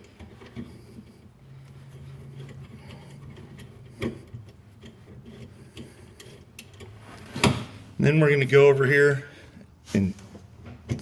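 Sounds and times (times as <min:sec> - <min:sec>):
small metallic clicks and ticks: 0:00.0 - 0:07.0.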